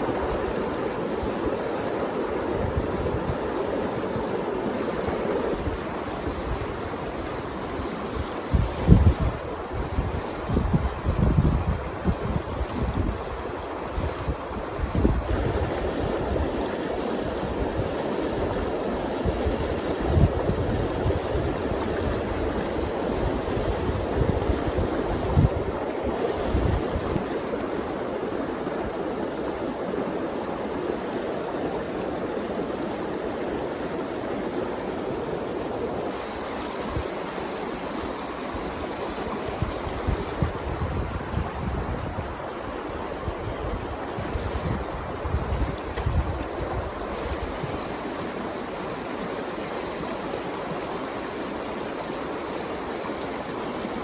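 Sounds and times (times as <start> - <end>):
wind buffeting microphone: 0.0 - 49.2
river water running: 0.0 - 54.0.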